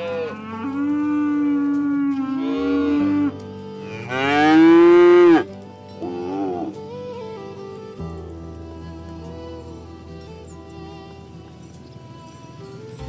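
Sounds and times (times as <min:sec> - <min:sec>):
cattle mooing: 0:00.0 - 0:06.8.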